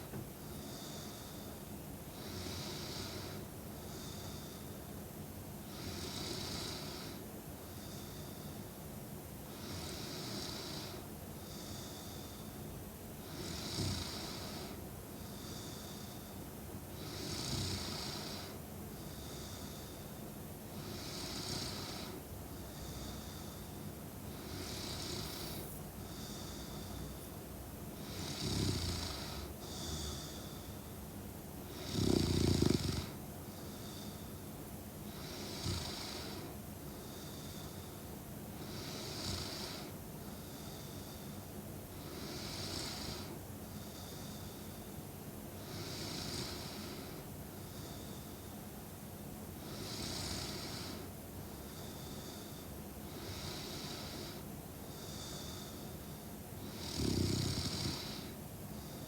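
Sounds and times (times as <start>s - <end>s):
woman snoring: 13.3s - 14.8s, 17.0s - 18.6s, 20.8s - 22.2s, 24.3s - 27.3s, 28.0s - 30.6s, 31.7s - 33.2s, 35.2s - 36.6s, 38.6s - 39.9s, 42.0s - 43.3s, 45.7s - 47.2s, 49.7s - 51.1s, 56.6s - 58.4s.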